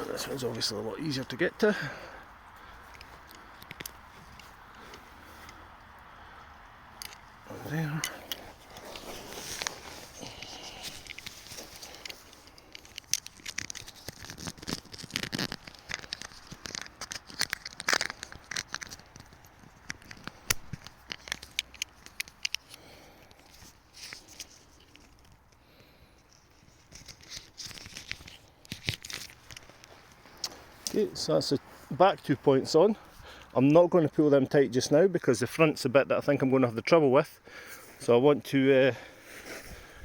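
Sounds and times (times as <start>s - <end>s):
sharp clicks and scrapes: 2.8s - 5.6s, 7.0s - 25.6s, 26.2s - 31.1s
tarp fabric rustling: 7.5s - 12.6s.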